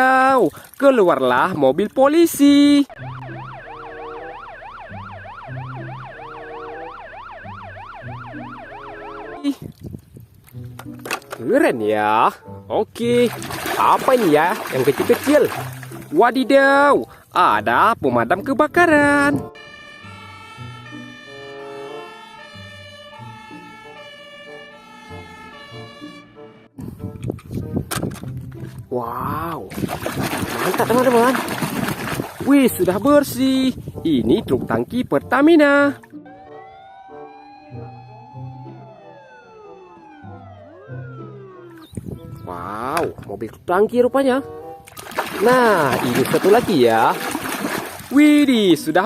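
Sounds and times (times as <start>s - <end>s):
police car siren wailing: 2.9s - 9.5s, 19.6s - 26.8s, 36.1s - 41.9s
background music with low notes: 3.0s - 9.5s, 10.4s - 47.3s, 48.1s - 49.0s
electronic tune: 3.0s - 9.5s, 36.2s - 42.4s.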